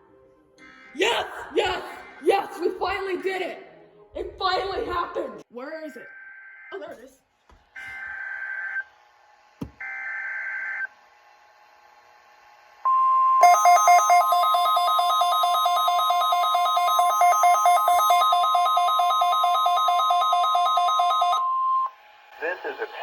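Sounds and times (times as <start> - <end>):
alternating two-pitch alarm warble: 12.9 - 22.0
steady warning alarm tone: 12.9 - 22.0.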